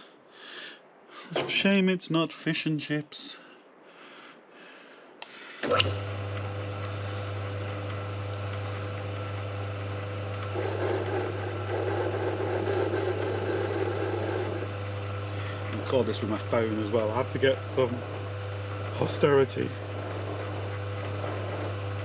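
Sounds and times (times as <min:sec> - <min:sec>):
lathe motor humming: 0:05.6 - 0:22.0
cutting tool grating on metal: 0:08.5 - 0:22.0.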